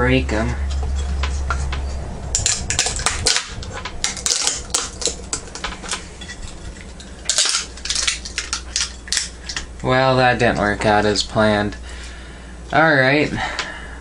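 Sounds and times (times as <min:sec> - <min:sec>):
metallic clicks and rattles: 0:00.6 - 0:10.7.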